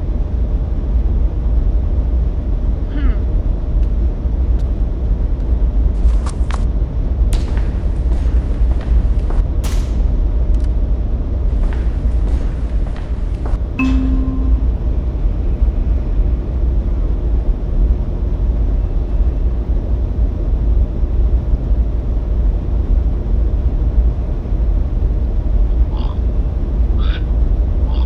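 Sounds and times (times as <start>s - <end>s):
short tone: 13.8s - 15.2s.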